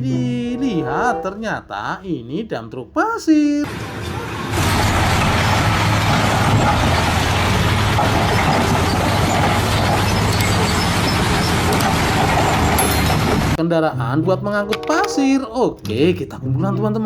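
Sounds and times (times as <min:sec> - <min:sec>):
heavy truck engine running: 0:03.7 - 0:13.6.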